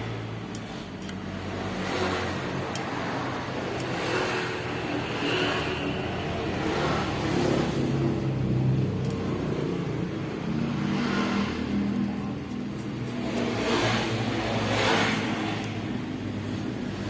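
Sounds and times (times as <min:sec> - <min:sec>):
two-stroke engine revving: 0:00.0 - 0:17.0.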